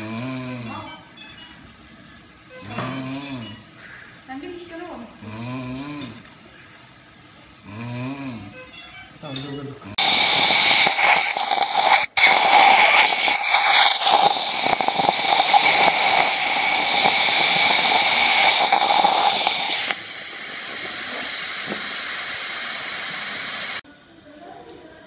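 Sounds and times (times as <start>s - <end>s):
loud steady hiss: 10.0s - 25.0s.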